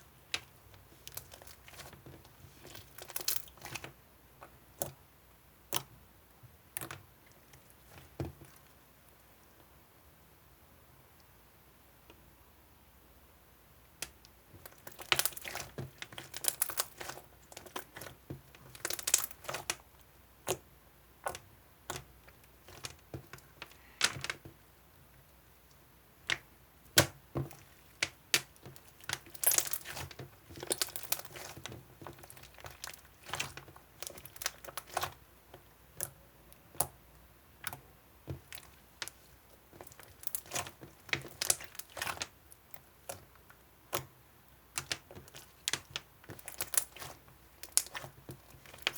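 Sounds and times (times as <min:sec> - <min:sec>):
small clicks and crinkling: 0:14.0 - 0:19.8, 0:21.2 - 0:24.6, 0:26.2 - 0:37.0, 0:37.6 - 0:44.1, 0:44.7 - 0:48.9.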